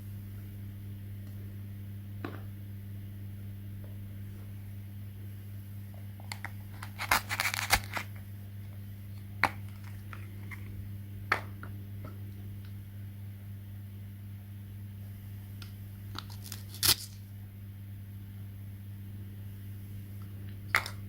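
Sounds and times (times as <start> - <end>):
steady low hum: 0.0 - 21.0
crinkles and clicks of handling: 5.9 - 12.8, 15.6 - 17.2.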